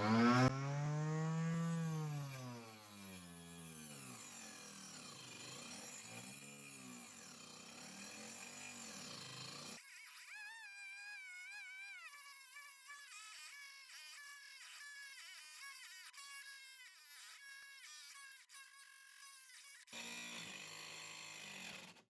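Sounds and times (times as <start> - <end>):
table saw cutting wood: 0.0 - 9.8, 20.0 - 22.0.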